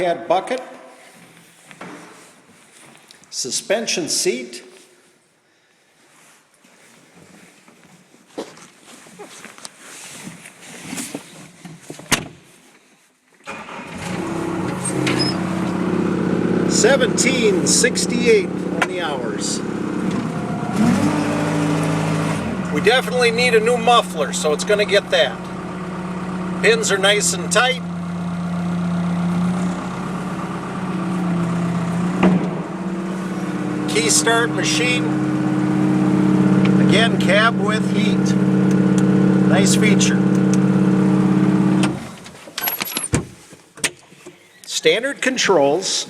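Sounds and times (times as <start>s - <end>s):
diesel engine starting and running: 13.4s - 42.4s.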